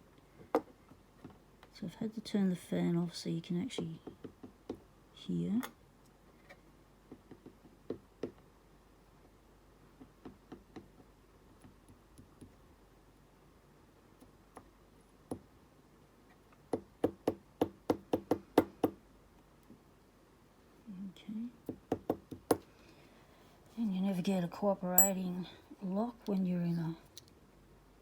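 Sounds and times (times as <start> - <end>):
lock being tapped: 25.0 - 25.2.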